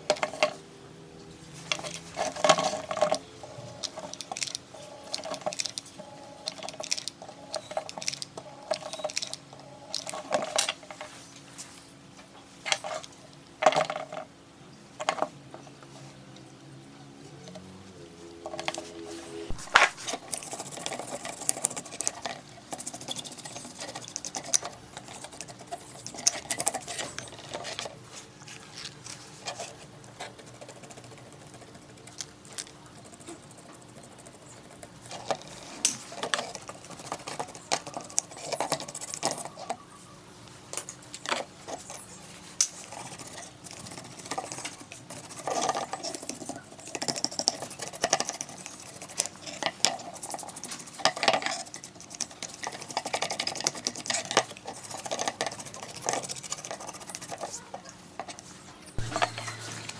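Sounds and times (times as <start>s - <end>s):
small hard parts clicking and rattling: 1.6s - 11.1s, 18.4s - 28.0s, 28.6s - 39.8s, 40.7s - 59.9s.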